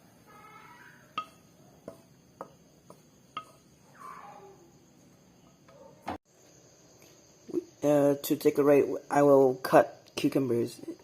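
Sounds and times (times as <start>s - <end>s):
utensil clinking on cookware: 1.1s - 3.8s.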